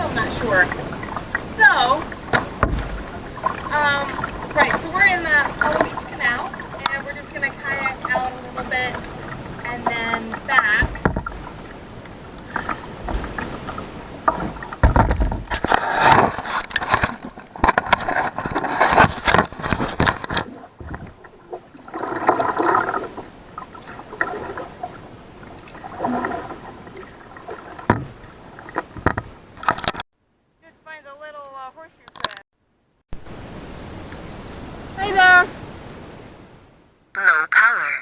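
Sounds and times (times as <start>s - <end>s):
paddle splashing through water: 0.0s - 30.0s
knocks on kayak hull: 2.3s - 3.6s, 10.7s - 11.5s, 14.3s - 15.7s.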